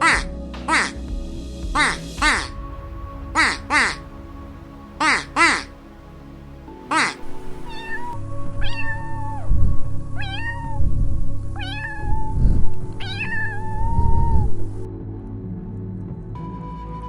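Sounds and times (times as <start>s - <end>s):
background music: 0.0s - 17.0s
cat meowing: 6.9s - 9.4s, 10.2s - 10.8s, 11.6s - 12.4s, 13.0s - 14.5s.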